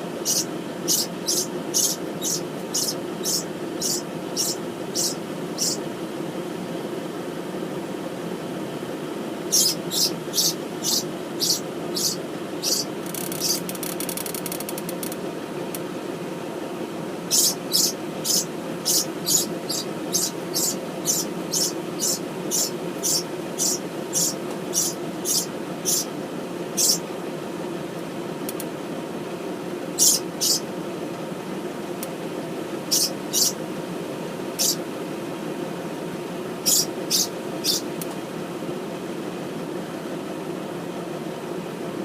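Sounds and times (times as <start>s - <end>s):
steady low hum: 0.0s - 42.0s
small bird chirping: 0.2s - 5.8s, 9.5s - 13.7s, 17.3s - 26.1s, 26.8s - 27.0s, 30.0s - 30.7s, 32.9s - 33.6s, 34.5s - 34.8s, 36.6s - 37.9s.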